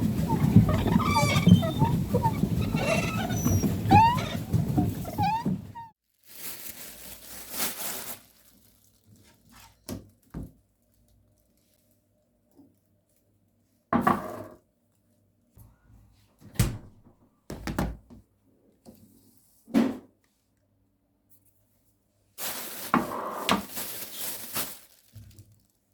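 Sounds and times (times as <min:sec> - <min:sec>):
animals chirping: 0:00.0 - 0:05.9.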